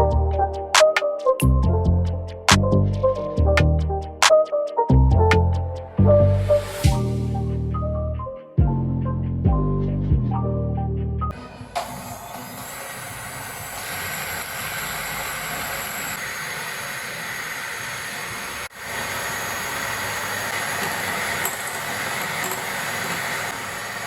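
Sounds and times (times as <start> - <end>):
small electric motor whirring: 11.8 - 24.0.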